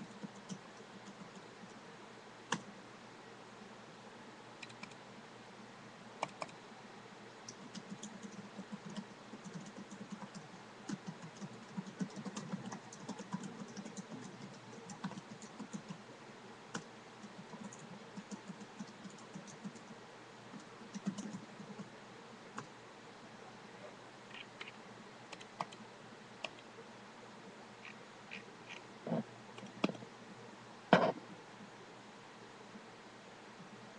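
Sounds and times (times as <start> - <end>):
computer keyboard typing: 0.0 - 1.5, 4.6 - 5.0, 7.5 - 16.0, 16.7 - 19.9, 20.5 - 21.9.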